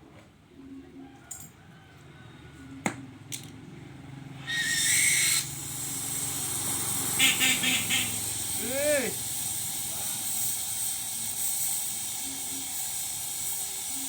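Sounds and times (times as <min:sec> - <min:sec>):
arc welding hiss: 0:04.5 - 0:14.0.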